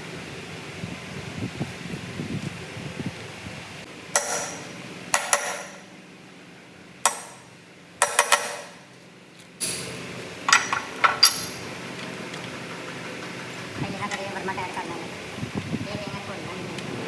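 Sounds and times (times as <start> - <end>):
metal-on-metal clanks and taps: 4.2 - 5.9, 7.1 - 8.9, 10.5 - 11.7.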